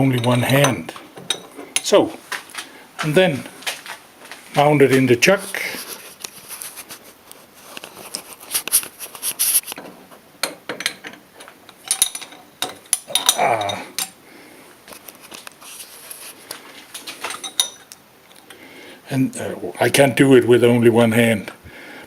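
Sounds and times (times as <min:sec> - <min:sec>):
metal clinks and taps: 0:00.0 - 0:02.0, 0:09.8 - 0:14.2, 0:17.2 - 0:18.0.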